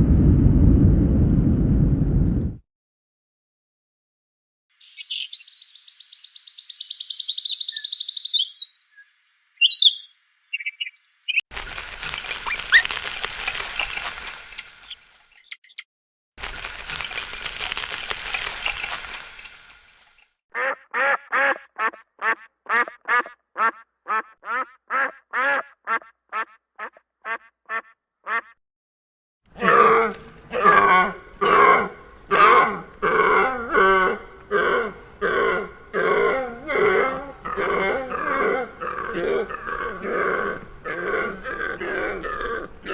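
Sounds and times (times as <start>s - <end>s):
farm animals and birds calling: 9.6s - 11.4s, 12.2s - 13.9s, 14.5s - 15.8s, 16.9s - 18.8s.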